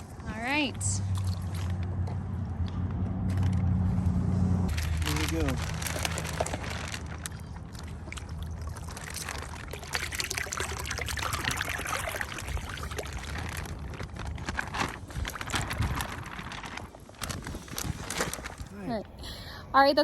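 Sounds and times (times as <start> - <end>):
water splashing as poured: 4.7 - 16.6.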